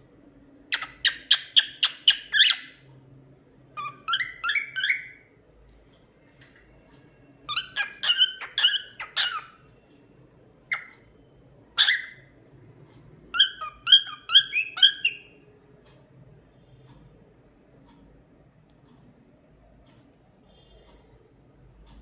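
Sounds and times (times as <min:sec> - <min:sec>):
cockatiel chirping: 0:00.7 - 0:02.8, 0:03.8 - 0:05.3, 0:07.5 - 0:09.6, 0:10.7 - 0:11.1, 0:11.8 - 0:12.3, 0:13.3 - 0:15.4.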